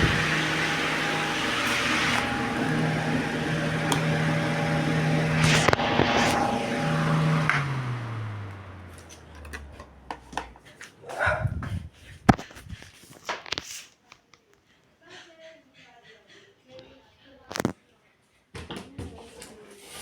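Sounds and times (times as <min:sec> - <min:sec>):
table fan running: 0:00.0 - 0:10.6.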